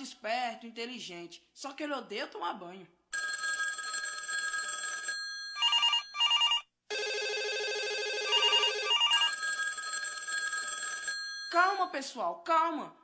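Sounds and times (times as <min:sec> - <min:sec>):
electronic telephone ringtones: 0:03.2 - 0:11.8.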